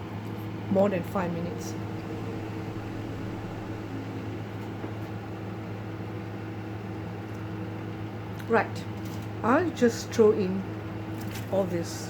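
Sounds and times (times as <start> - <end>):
machine hum: 0.0 - 9.6.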